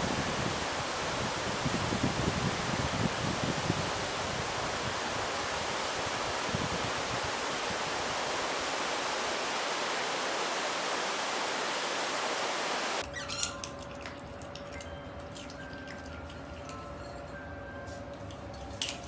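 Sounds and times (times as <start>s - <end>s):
steady hiss-like rushing: 0.0s - 13.0s.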